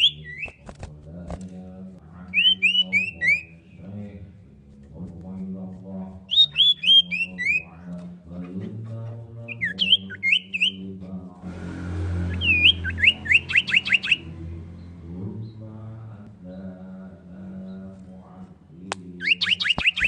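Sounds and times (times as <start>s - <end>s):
bird whistled calls: 0.0s - 0.6s, 2.3s - 3.5s, 6.3s - 7.6s, 9.5s - 10.8s, 12.2s - 14.3s, 19.2s - 20.0s.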